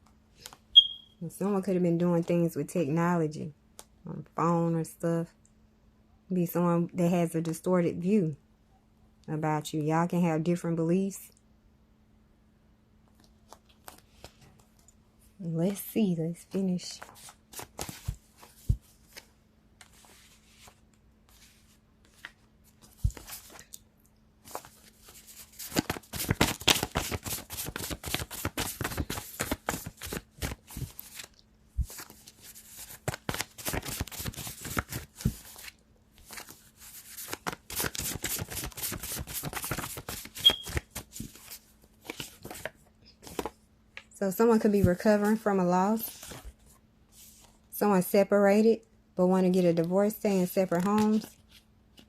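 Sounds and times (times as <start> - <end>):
cards riffling and flicking: 24.5 - 43.5.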